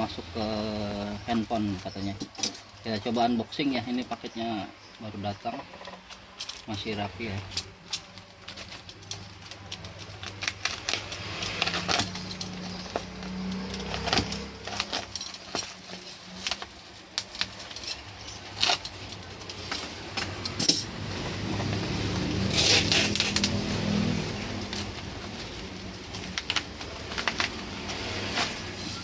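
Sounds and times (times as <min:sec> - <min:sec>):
packaging rustling and crinkling: 0:04.8 - 0:28.8.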